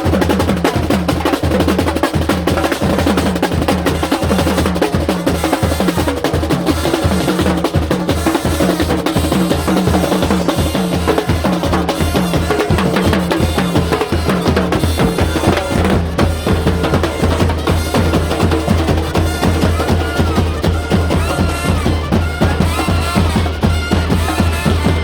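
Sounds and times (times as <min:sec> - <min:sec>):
carnival parade music: 0:00.0 - 0:25.0
fast dense drumming: 0:00.0 - 0:25.0.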